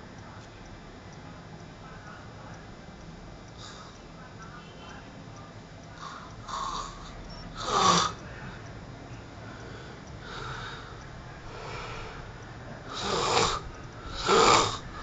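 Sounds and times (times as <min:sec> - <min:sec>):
faint breaths: 0:03.5 - 0:04.1, 0:05.9 - 0:08.8, 0:09.4 - 0:15.0
man snoring: 0:06.0 - 0:08.2, 0:12.9 - 0:15.0.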